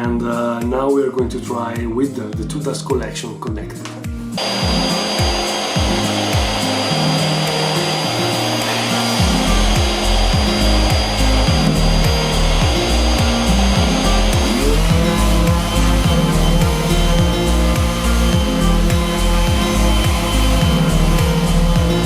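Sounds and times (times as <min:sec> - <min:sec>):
background music with steady beat: 0:00.0 - 0:22.0
dust extraction vacuum rushing: 0:04.4 - 0:22.0
electric sander whining: 0:04.4 - 0:22.0.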